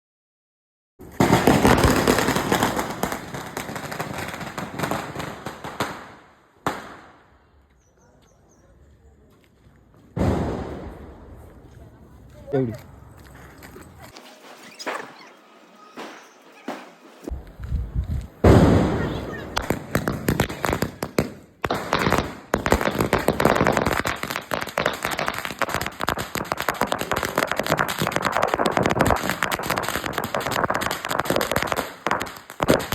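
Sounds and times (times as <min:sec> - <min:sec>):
firecracker string bangs: 0:18.4 - 0:32.9.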